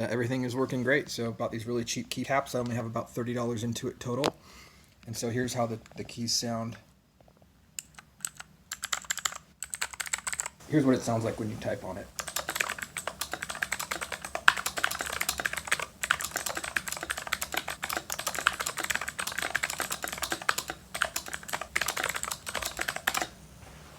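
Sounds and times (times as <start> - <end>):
fast typing on clicky keyboard: 7.8 - 10.6, 12.1 - 23.4.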